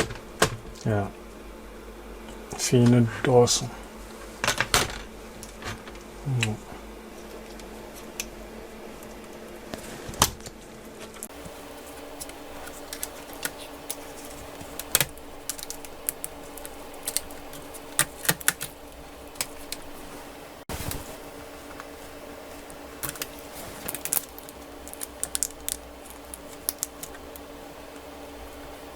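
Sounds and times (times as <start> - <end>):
steady low hum: 0.0 - 28.9
tools and plastic parts clicking: 12.2 - 19.8.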